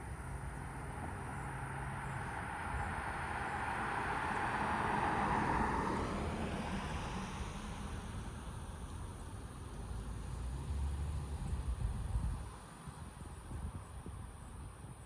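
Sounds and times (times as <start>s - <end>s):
car passing by: 0.2s - 9.0s, 9.8s - 11.8s.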